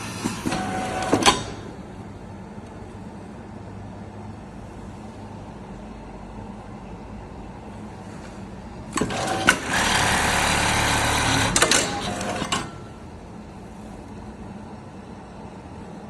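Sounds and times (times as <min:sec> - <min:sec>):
low machine hum: 0:00.0 - 0:16.0
sewing machine running: 0:09.0 - 0:12.8.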